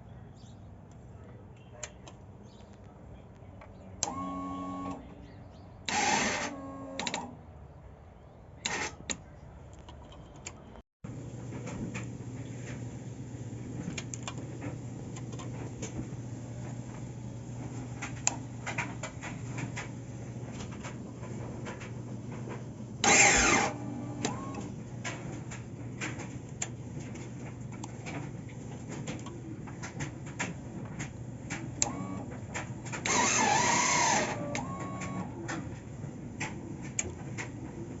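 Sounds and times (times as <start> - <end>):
engine cranking: 23.0 - 24.6, 33.0 - 35.1
starter clicks: 29.0 - 35.6.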